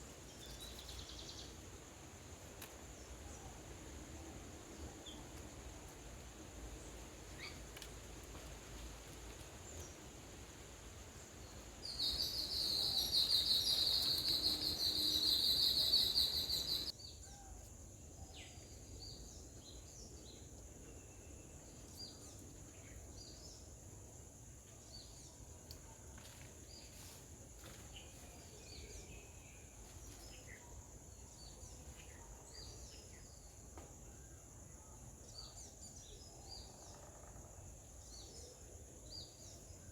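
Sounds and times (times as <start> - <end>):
constant high hiss: 0.0 - 39.9
faint bird chirps: 11.8 - 19.3.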